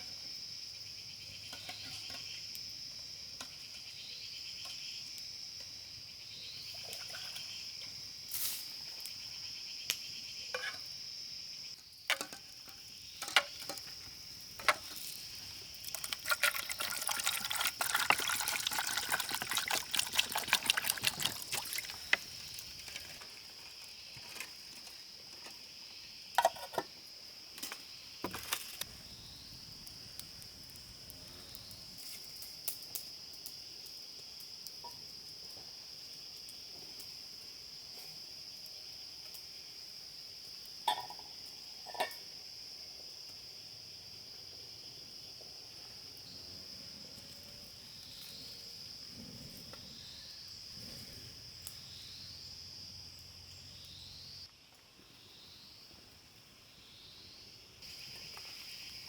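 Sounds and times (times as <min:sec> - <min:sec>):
insects shrilling: 0:12.4 - 0:25.1.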